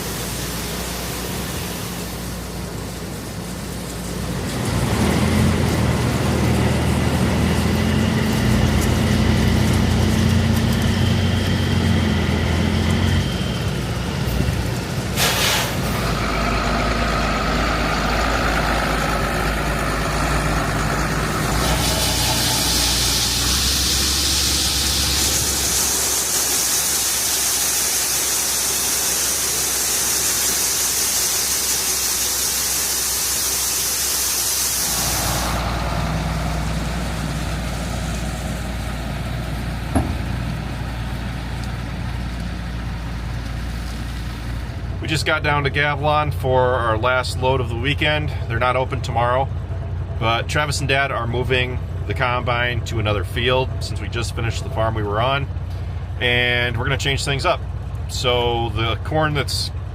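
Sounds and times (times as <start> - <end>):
heavy vehicle engine hum: 0.0 - 59.9
high hiss: 20.8 - 38.9
sharp knock: 39.9 - 40.3.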